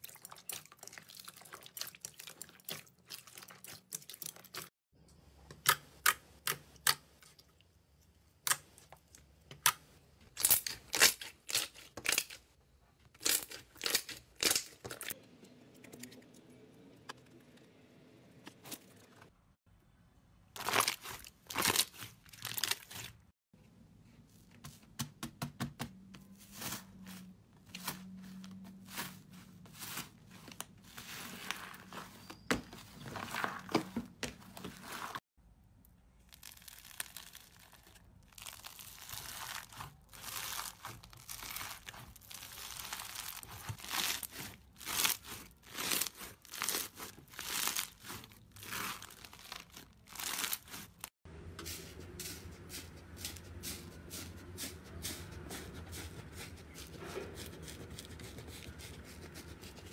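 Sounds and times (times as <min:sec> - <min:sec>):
slime crackling and popping: 0:36.3 - 0:50.9.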